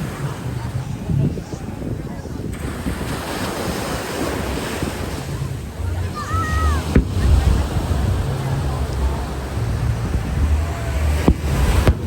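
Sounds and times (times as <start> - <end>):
steady rush and low rumble: 0.0 - 12.0
wind buffeting microphone: 0.0 - 12.0
firework bang: 6.8 - 8.8, 10.0 - 12.0.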